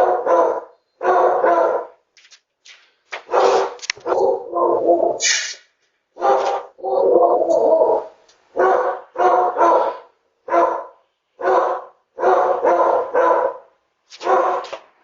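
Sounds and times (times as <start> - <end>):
dogs barking: 0.0 - 2.0, 3.2 - 5.2, 6.2 - 14.8.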